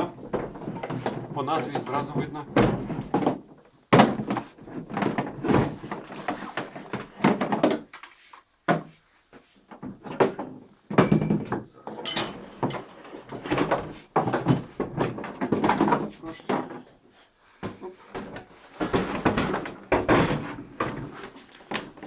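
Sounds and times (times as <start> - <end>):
short metallic ring: 12.1 - 13.1.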